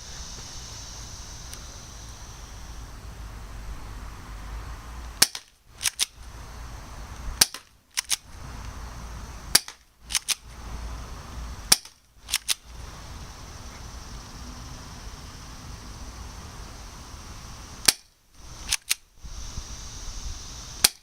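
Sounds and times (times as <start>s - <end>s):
airsoft pistol shots: 5.2s - 6.1s, 7.4s - 8.2s, 9.5s - 10.4s, 11.7s - 12.6s, 17.8s - 18.1s
pistol mechanism clicks: 5.2s - 6.2s, 7.4s - 8.3s, 9.5s - 10.5s, 11.7s - 12.6s, 17.8s - 19.1s.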